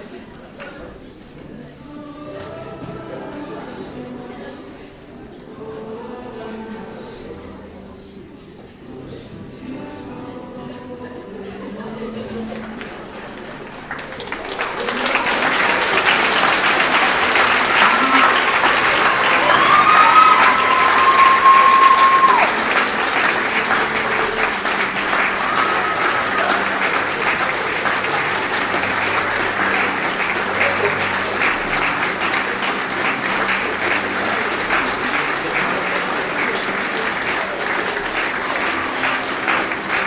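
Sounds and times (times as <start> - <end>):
crowd applauding: 12.4 - 40.0
drawn-out cheers: 15.0 - 23.0, 25.1 - 26.8.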